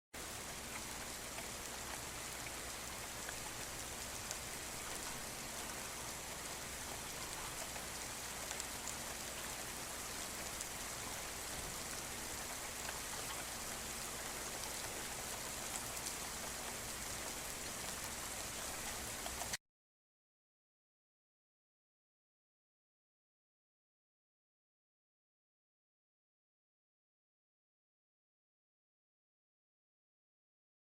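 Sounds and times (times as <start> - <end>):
rain hissing in woods: 0.2 - 19.6
raindrop ticks: 0.2 - 19.6.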